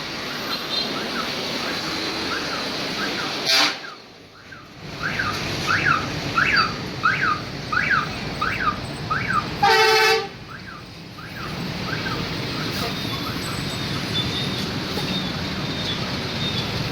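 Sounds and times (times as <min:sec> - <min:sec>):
traffic-like background noise: 0:00.0 - 0:16.9
loud toot: 0:03.4 - 0:04.0, 0:06.5 - 0:10.4
electronic alarm chirping: 0:04.4 - 0:09.5.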